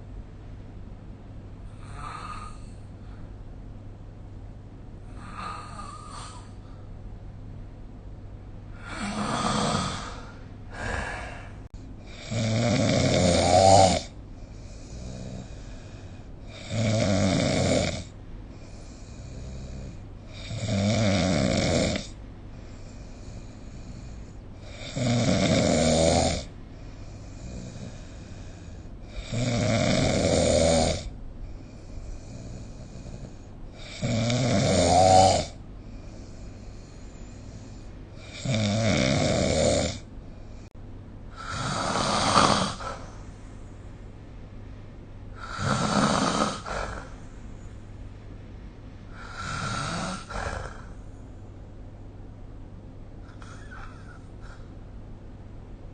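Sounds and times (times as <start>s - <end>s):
quiet breathing: 1.5s - 34.6s, 35.4s - 39.3s, 39.9s - 55.1s
person snoring: 1.7s - 2.8s, 5.1s - 6.6s, 8.7s - 22.2s, 22.9s - 40.7s, 41.3s - 43.3s, 45.4s - 47.4s, 49.1s - 51.0s.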